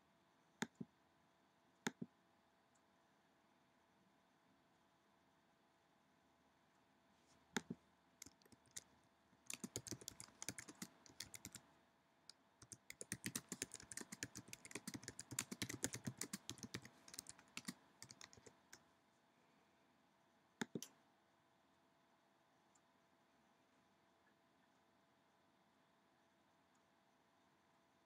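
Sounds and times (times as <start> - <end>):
keyboard typing: 7.6 - 8.9, 9.5 - 11.7, 12.6 - 18.8.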